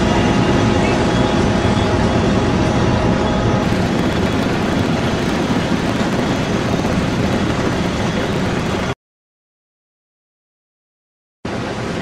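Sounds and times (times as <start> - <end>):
heavy farm vehicle engine: 0.0 - 8.9.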